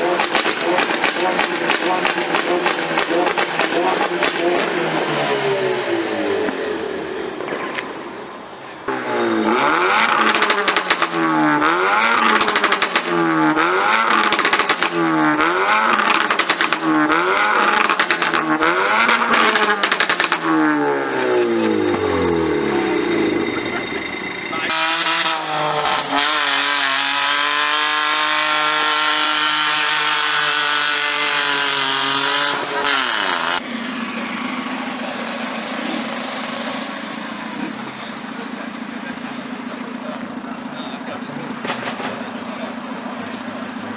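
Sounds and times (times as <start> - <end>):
exhaust pops crackling: 0.0 - 5.0, 7.3 - 26.9, 34.6 - 43.9
car engine revving hard: 0.0 - 43.9.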